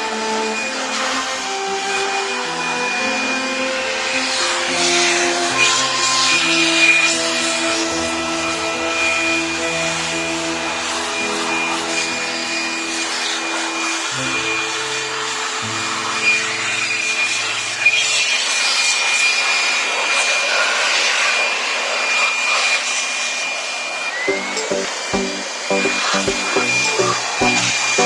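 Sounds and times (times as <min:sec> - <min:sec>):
background music: 0:00.0 - 0:17.1, 0:24.3 - 0:28.0.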